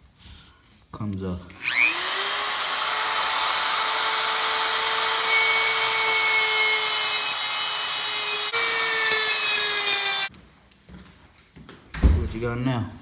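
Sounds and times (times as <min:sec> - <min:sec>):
small power tool whining: 0:01.6 - 0:10.3.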